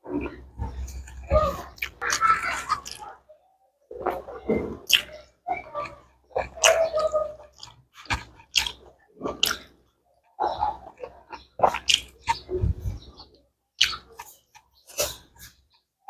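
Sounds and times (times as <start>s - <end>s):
person chewing food: 0.2s - 3.1s, 4.0s - 9.7s, 10.5s - 13.2s.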